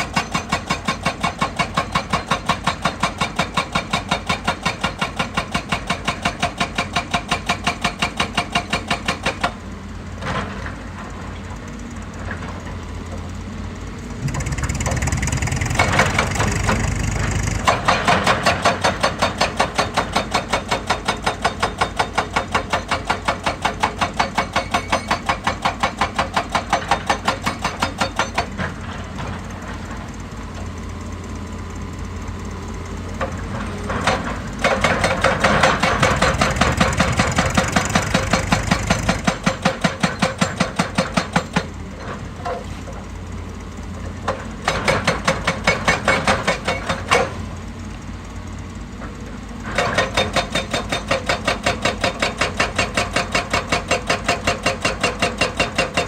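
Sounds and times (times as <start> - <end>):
hydraulic breaker hammering rock: 0.0 - 9.6, 14.0 - 30.2, 33.2 - 42.8, 44.2 - 47.5, 49.6 - 56.0
diesel engine running: 9.6 - 20.1, 28.6 - 40.0, 41.6 - 56.0.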